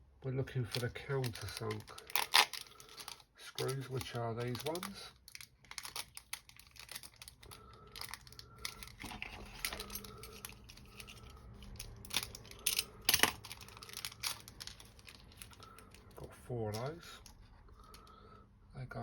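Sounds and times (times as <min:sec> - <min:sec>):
screws clicking and rattling: 0:04.5 - 0:15.6.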